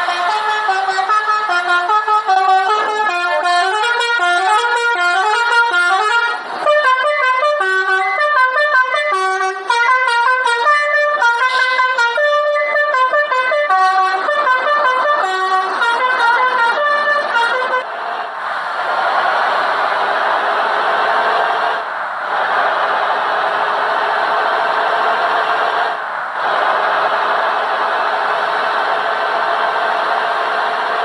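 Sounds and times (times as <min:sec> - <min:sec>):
multi-tone air horn melody: 0:00.0 - 0:17.9.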